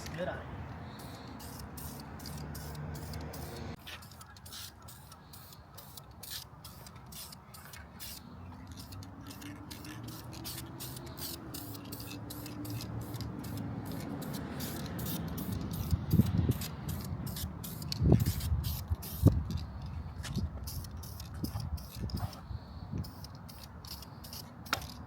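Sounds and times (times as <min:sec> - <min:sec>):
aerosol spray can hissing: 0:00.9 - 0:19.4.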